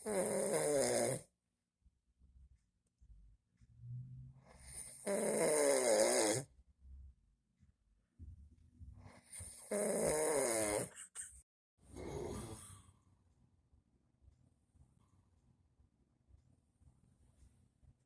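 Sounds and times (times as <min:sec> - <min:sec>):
man snoring: 0:00.0 - 0:01.3, 0:04.6 - 0:06.5, 0:09.2 - 0:10.9, 0:11.9 - 0:12.7.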